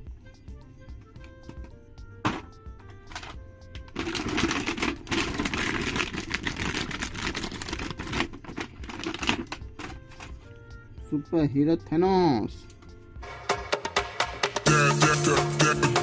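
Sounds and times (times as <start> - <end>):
background music with steady tones: 0.0 - 16.0
rapid clicking and rustling: 3.1 - 10.4.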